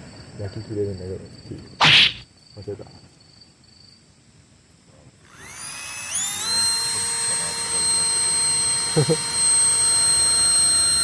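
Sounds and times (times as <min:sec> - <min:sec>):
electric air pump whining: 0:05.3 - 0:11.0.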